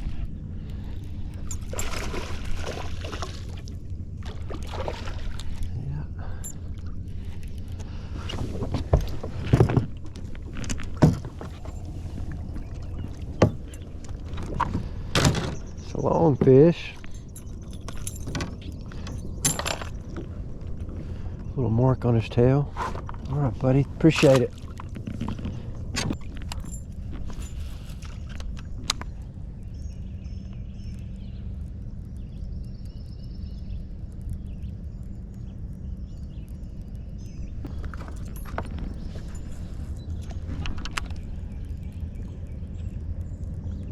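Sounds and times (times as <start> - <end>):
steady low rumble: 0.0 - 43.9
birds chirping: 11.0 - 43.9.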